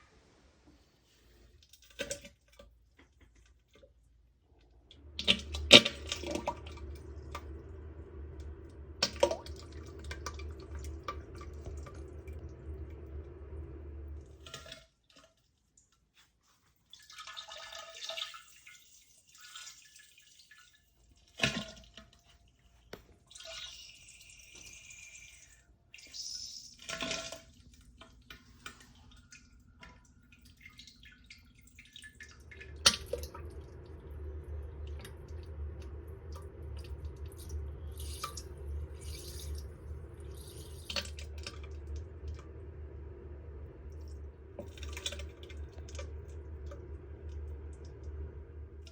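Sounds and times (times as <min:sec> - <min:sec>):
low steady hum: 0:00.0 - 0:15.3, 0:21.2 - 0:48.9
drips and plops into water: 0:04.9 - 0:13.3, 0:26.8 - 0:42.5, 0:43.9 - 0:48.0
diarrhea spluttering into toilet: 0:04.9 - 0:15.4, 0:16.9 - 0:22.4, 0:23.2 - 0:42.6, 0:43.9 - 0:48.0.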